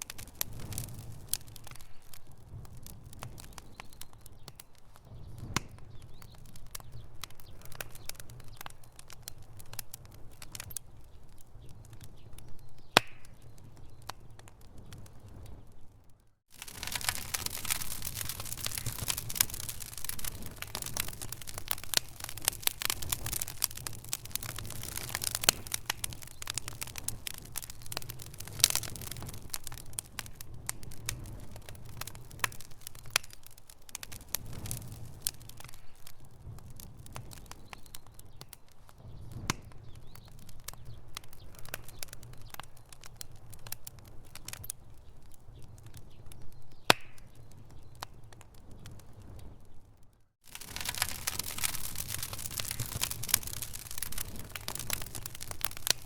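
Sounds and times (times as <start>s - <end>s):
campfire crackling and popping: 0.0s - 56.0s
low rumble of burning fire: 0.0s - 56.0s.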